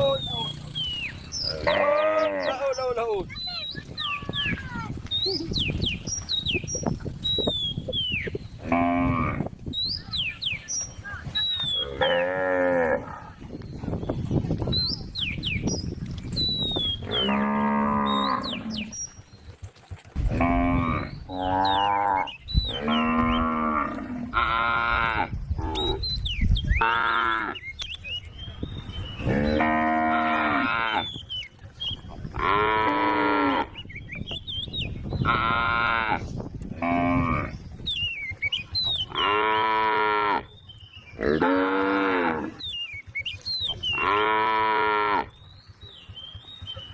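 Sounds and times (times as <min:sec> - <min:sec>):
cattle mooing: 0:01.4 - 0:02.6, 0:11.8 - 0:13.3, 0:17.0 - 0:18.9, 0:20.3 - 0:26.0, 0:29.2 - 0:31.1, 0:32.4 - 0:33.8, 0:36.8 - 0:37.6, 0:39.1 - 0:40.5, 0:41.2 - 0:42.6, 0:43.9 - 0:45.3.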